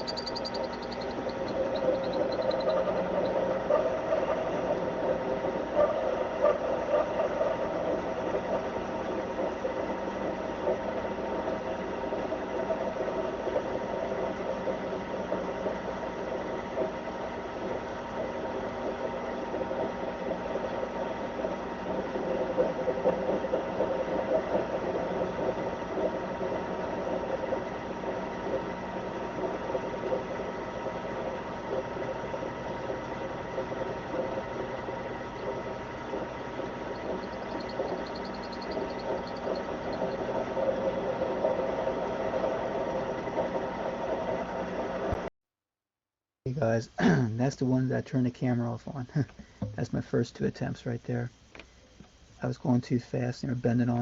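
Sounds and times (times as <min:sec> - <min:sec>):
metal lathe whining: 0:00.0 - 0:16.4, 0:18.6 - 0:43.9.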